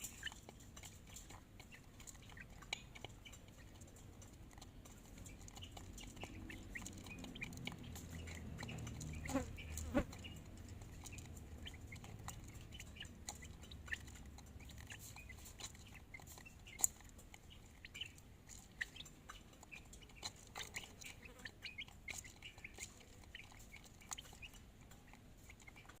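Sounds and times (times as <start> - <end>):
chicken clucking: 0.0 - 26.0
chicken pecking taps: 0.0 - 26.0.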